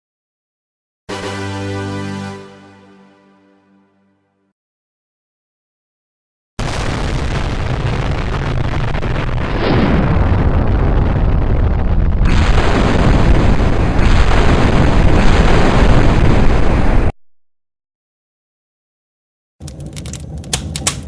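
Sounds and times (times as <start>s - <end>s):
explosions rumbling: 6.6s - 17.2s.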